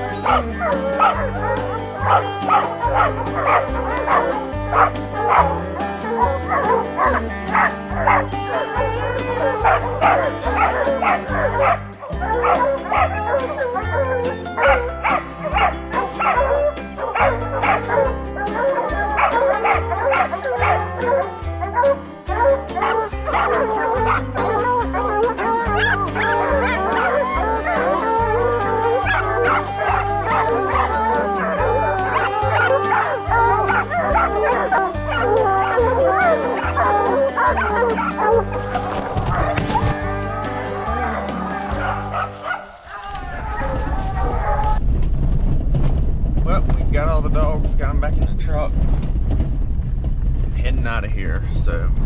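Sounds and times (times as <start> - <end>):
background music with bass line: 0.0 - 42.5
hounds barking and yipping: 0.0 - 44.8.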